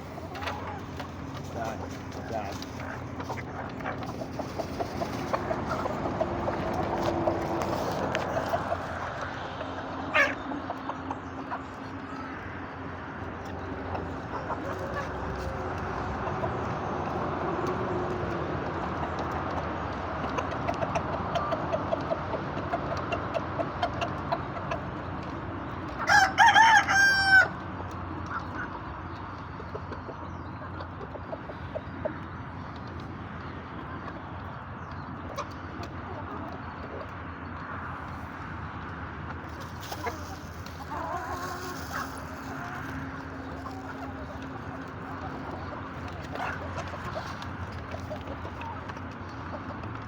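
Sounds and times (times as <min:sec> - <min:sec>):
chickens clucking: 0:00.0 - 0:50.0
rooster crowing: 0:26.0 - 0:27.6.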